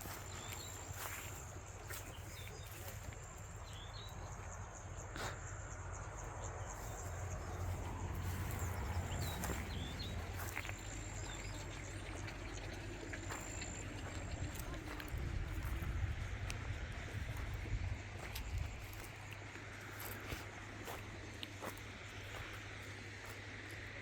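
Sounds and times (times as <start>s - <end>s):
small birds chirping: 0.0s - 24.0s
low rumble: 5.9s - 18.9s.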